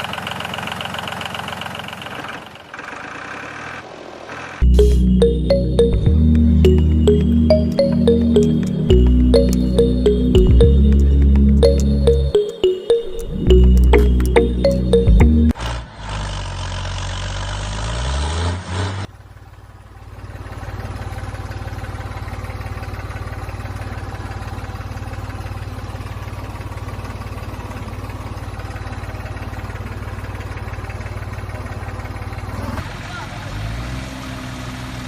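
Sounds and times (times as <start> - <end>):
loud sound with changing pitch: 4.6 - 15.6.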